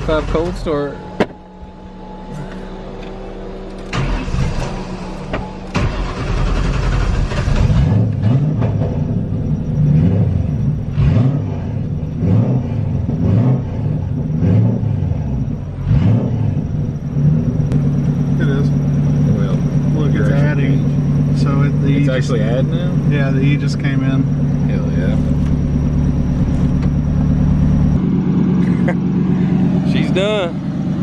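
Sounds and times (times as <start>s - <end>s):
starter motor whirring: 0.0s - 8.2s
engine lumpy idle: 0.0s - 11.0s, 16.6s - 31.0s.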